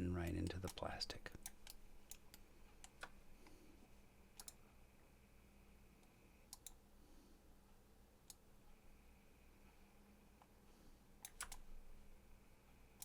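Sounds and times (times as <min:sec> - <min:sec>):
computer mouse clicks: 0:00.2 - 0:03.6, 0:04.4 - 0:04.6, 0:06.0 - 0:06.8, 0:08.2 - 0:08.4, 0:11.2 - 0:11.7.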